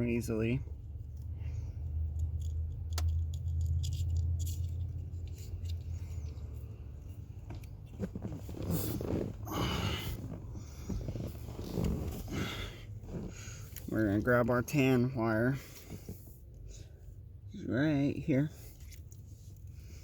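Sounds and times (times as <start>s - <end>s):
low steady hum: 0.0s - 20.0s
rustling of wires being handled: 1.9s - 16.6s.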